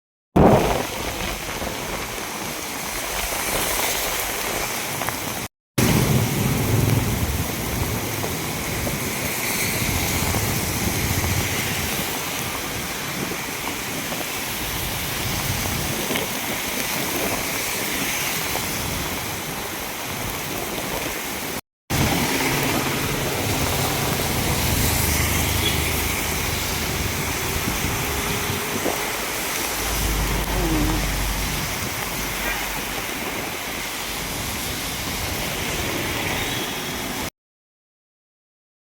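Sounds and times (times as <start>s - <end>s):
heavy rain falling: 0.4s - 37.3s
low rumble: 26.2s - 33.0s.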